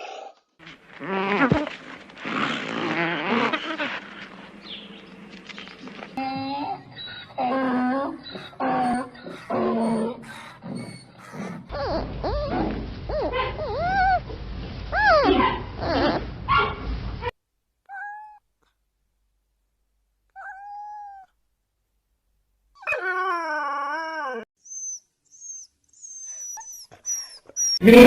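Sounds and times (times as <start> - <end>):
animal whining cries: 6.2 - 14.2, 22.8 - 27.9
wavering animal call: 6.3 - 12.0.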